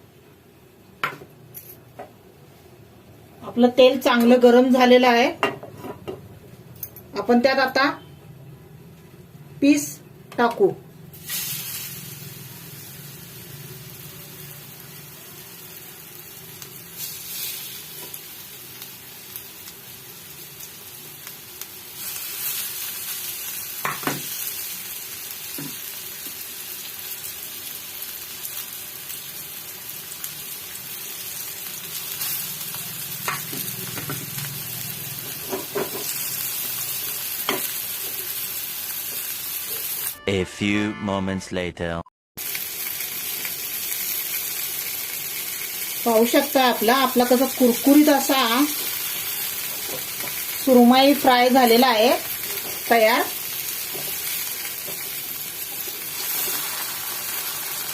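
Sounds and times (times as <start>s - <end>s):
fish sizzling in hot oil: 11.0s - 40.2s, 42.4s - 57.9s.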